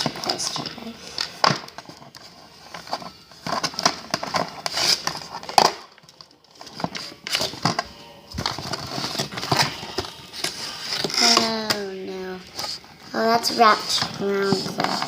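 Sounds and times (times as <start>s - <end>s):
packaging crinkling: 0.0s - 11.8s.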